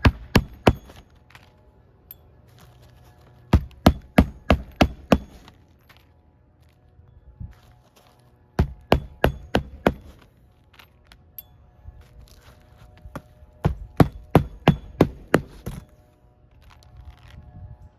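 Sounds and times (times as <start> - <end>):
hammer striking nails: 0.0 - 1.0, 3.5 - 5.6, 8.6 - 10.3, 13.6 - 15.9.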